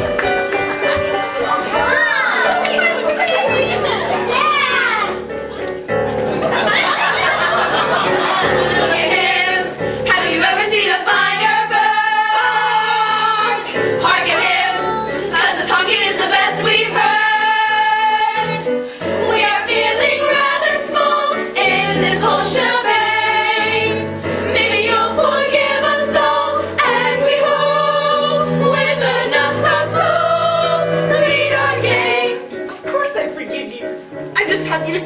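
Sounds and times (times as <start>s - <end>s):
instrumental accompaniment: 0.0s - 35.0s
voices singing together: 6.5s - 32.7s.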